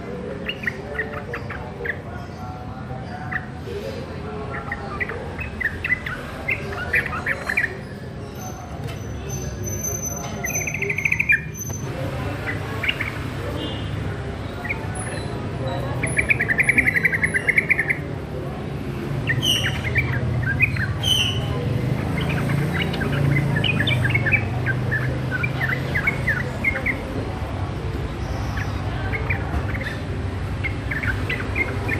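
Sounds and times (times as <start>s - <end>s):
young bulbul singing: 4.5s - 7.8s, 9.3s - 11.8s, 12.5s - 18.2s, 19.2s - 27.2s, 28.1s - 31.9s.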